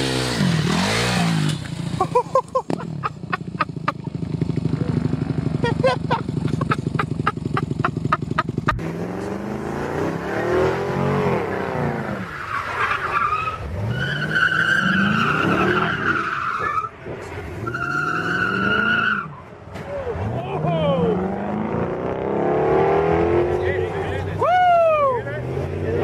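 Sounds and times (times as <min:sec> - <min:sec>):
car engines revving: 0:00.0 - 0:26.0
tyre squeals: 0:12.2 - 0:17.0, 0:17.6 - 0:19.4.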